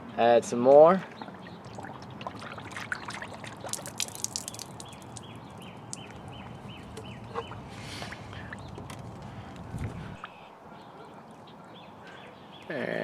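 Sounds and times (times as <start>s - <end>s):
coolant gurgling and splashing: 1.0s - 6.7s.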